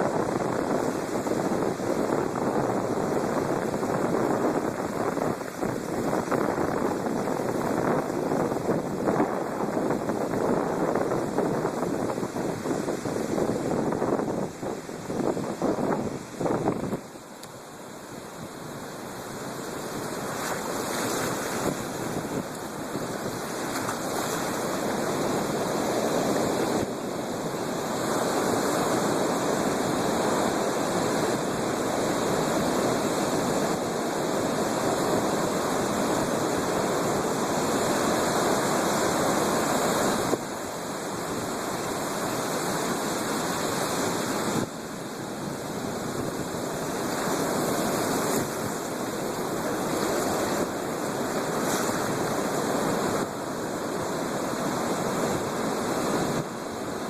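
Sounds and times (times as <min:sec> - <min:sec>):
breaking waves: 0:00.0 - 0:57.0.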